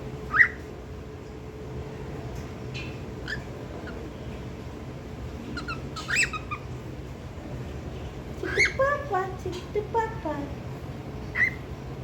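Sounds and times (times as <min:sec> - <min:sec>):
cockatiel chirping: 0:00.3 - 0:00.7, 0:05.5 - 0:06.7, 0:08.4 - 0:08.8, 0:11.3 - 0:11.6.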